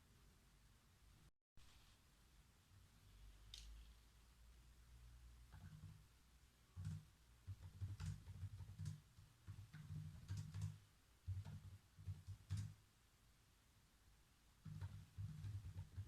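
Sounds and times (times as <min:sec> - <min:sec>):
faint typing on keyboard: 0:05.4 - 0:06.1, 0:06.7 - 0:12.8, 0:14.6 - 0:16.0.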